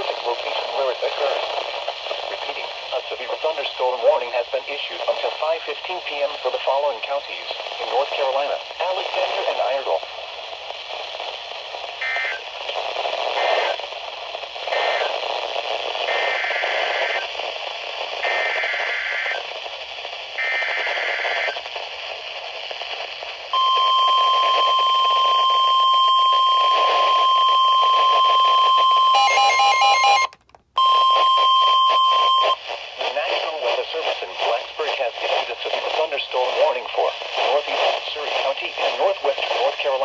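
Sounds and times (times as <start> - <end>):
radio static: 0.0 - 40.0
steady warning alarm tone: 23.6 - 32.5
warbling data tone bursts: 29.2 - 30.3.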